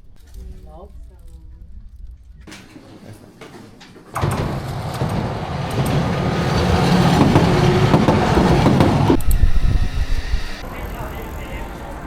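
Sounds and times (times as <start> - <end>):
train rumbling and rattling: 4.2 - 9.3.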